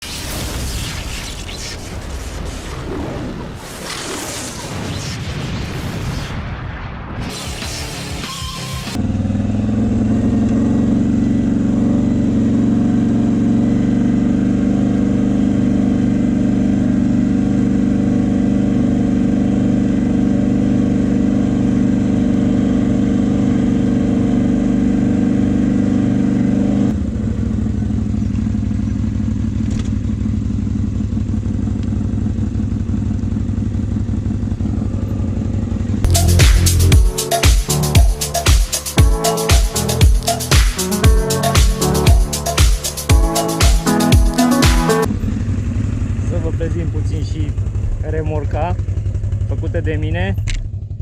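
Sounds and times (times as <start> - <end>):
atv engine running: 9.0 - 37.1, 39.8 - 51.0.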